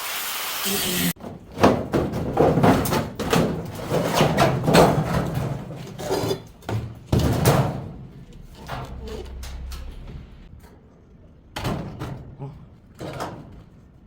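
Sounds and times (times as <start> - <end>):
knocks and clanks on washing machine: 1.2 - 9.0.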